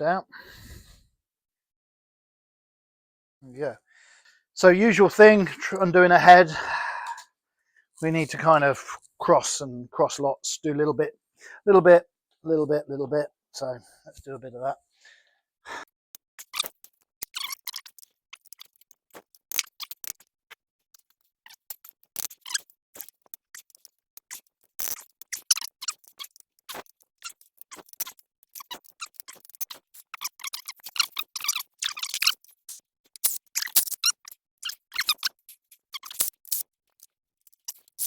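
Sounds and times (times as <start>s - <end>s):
socket ratchet clicking: 20.9s - 38.0s.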